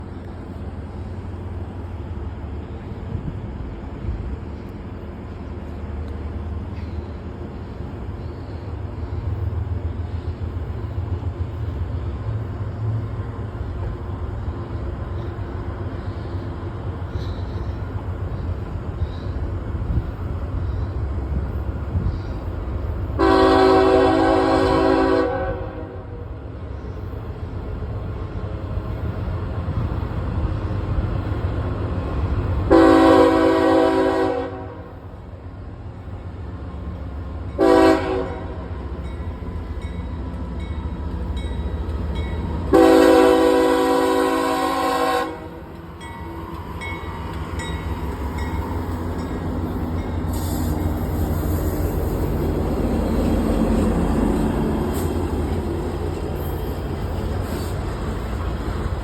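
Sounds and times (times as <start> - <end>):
diesel locomotives rumbling: 0.0 - 59.0
locomotive air horn blasts: 23.2 - 26.2, 32.7 - 35.0, 37.6 - 38.7, 42.7 - 45.6.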